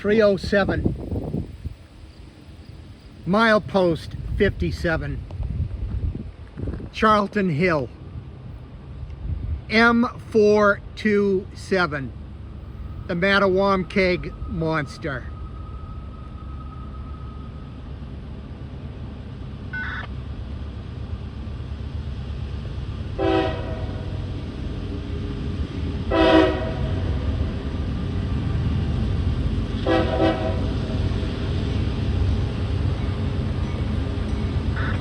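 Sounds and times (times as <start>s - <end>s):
low rumble of train: 0.0s - 35.0s
locomotive horn blasts: 23.2s - 24.2s, 26.1s - 27.1s, 29.8s - 30.8s.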